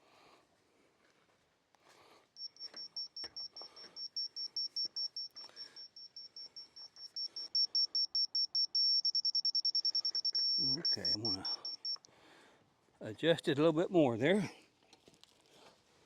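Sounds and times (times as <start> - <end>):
electronic level beeping: 2.4 - 12.0.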